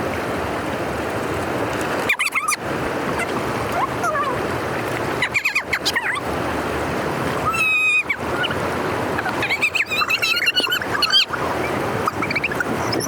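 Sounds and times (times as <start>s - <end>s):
water rushing through channel: 0.0s - 13.0s
high animal calls: 7.4s - 8.6s, 9.2s - 13.0s
short chirping calls: 9.2s - 13.0s.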